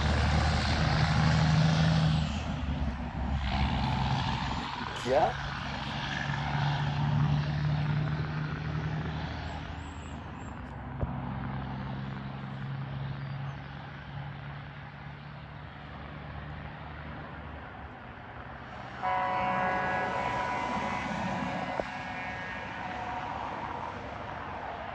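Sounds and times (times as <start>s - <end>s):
diesel truck engine running: 0.0s - 18.6s
road and wind noise: 0.0s - 24.9s
truck air horns blasting: 18.8s - 24.4s.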